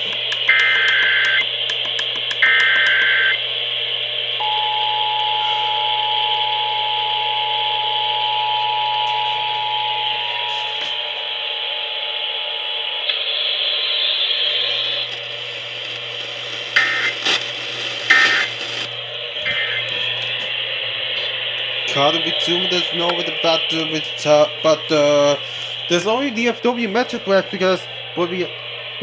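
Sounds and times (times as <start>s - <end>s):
radio static hiss: 0.0s - 29.0s
steady two-tone attention signal: 18.0s - 18.8s.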